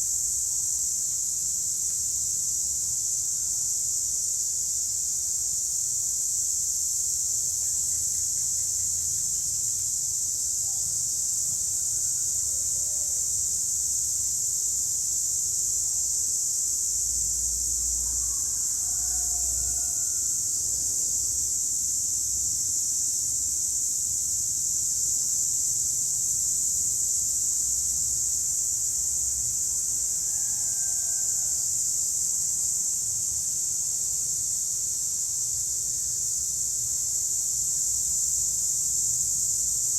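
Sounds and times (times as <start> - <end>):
cicadas droning: 0.0 - 39.9.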